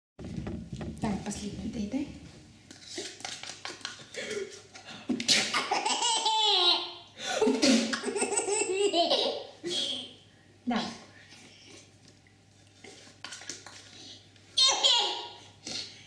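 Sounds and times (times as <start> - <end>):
baby laughing: 5.4 - 7.0, 7.9 - 10.1, 14.6 - 15.3.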